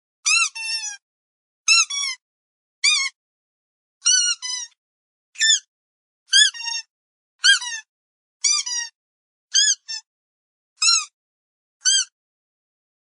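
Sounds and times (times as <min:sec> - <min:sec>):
dog squeaky toy squeaking: 0:00.2 - 0:01.0, 0:01.7 - 0:02.2, 0:02.8 - 0:03.2, 0:04.0 - 0:04.8, 0:05.4 - 0:05.7, 0:06.3 - 0:08.9, 0:09.6 - 0:10.0, 0:10.8 - 0:11.1, 0:11.8 - 0:12.2.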